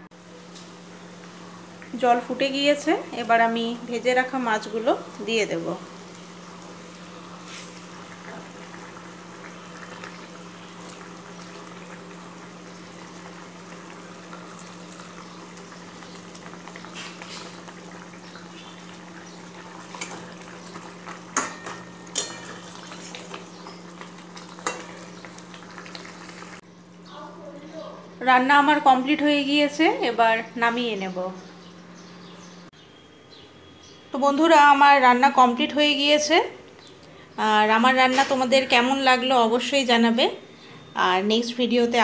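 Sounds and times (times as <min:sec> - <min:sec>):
gravy bubbling in a pan: 0:04.0 - 0:26.6
metal spoon clinking on pan: 0:21.4 - 0:23.8.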